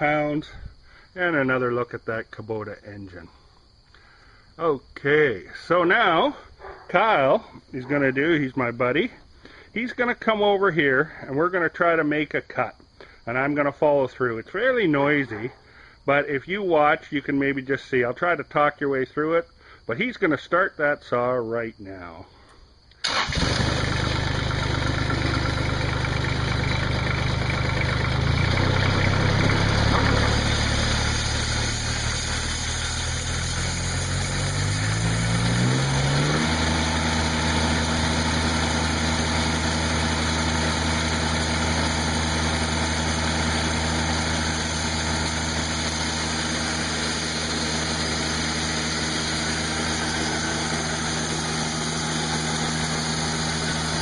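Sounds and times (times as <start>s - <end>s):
diesel engine running: 23.0s - 54.0s.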